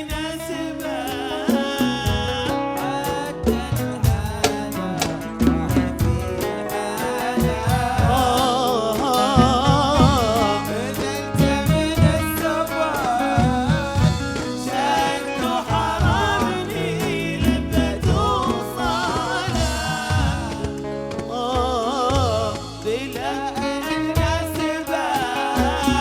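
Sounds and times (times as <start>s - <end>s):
percussion and instrumental backing: 0.0s - 26.0s
person singing ornamented vocals: 6.3s - 26.0s.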